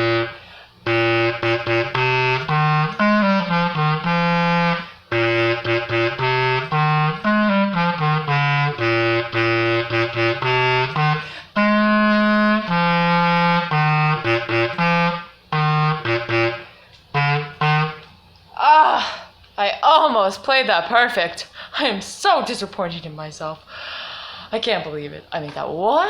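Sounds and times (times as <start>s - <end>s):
low wind instrument melody: 0.0s - 18.1s.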